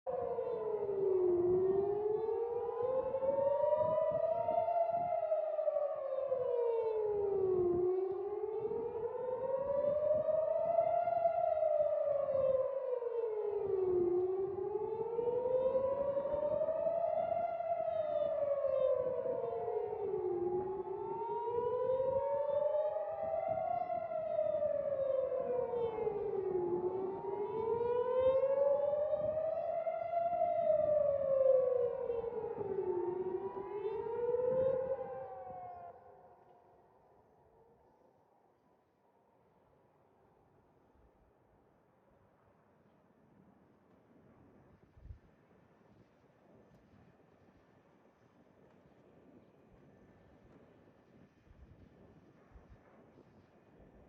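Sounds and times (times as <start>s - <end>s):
air-raid sirens wailing: 0.1s - 37.7s.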